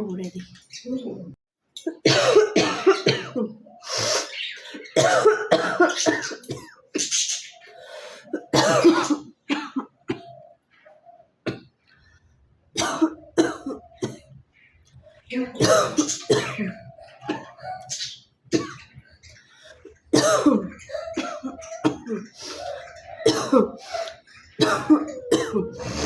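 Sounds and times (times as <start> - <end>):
woman coughing: 1.8 - 3.6, 4.9 - 7.1, 8.3 - 10.3, 12.8 - 14.2, 15.6 - 17.7, 20.2 - 22.3, 23.2 - 26.0.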